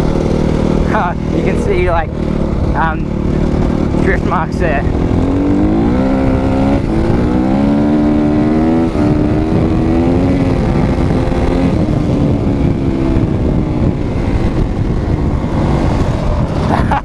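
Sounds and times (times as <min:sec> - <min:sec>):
dirt bike engine revving: 0:00.0 - 0:17.0
wind rumble: 0:00.0 - 0:17.0.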